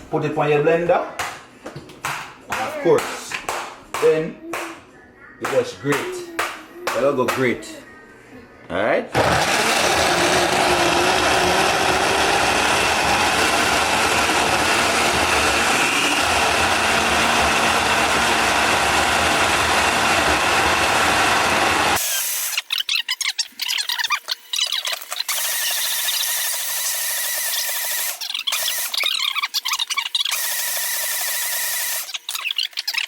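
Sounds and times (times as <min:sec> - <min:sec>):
blender running: 0:09.2 - 0:22.6, 0:25.3 - 0:29.0, 0:30.3 - 0:32.1.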